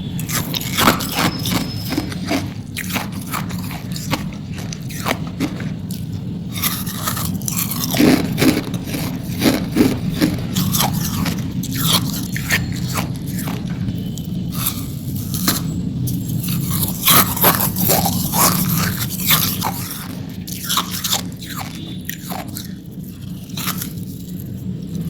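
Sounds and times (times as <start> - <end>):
steady low hum: 0.0 - 25.0
ice being crunched: 0.2 - 13.8.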